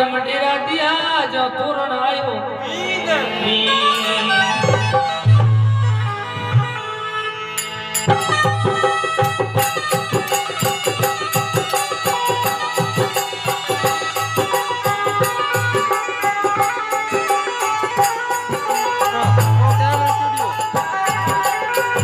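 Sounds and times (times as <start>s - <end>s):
fast percussion beat: 7.9s - 22.0s.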